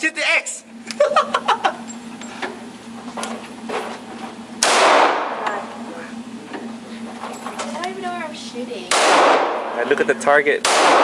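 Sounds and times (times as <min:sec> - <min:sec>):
steady hum: 0:00.0 - 0:11.0
gunshot with echo: 0:04.6 - 0:05.4, 0:08.9 - 0:09.8, 0:10.6 - 0:11.0.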